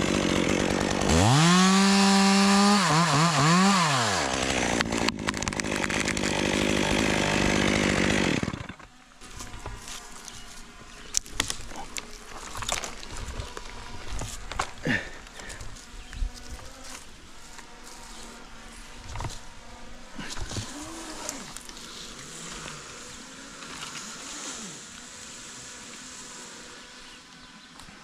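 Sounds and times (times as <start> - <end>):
chainsaw revving: 0.0 - 10.6, 11.2 - 15.9, 18.8 - 27.3.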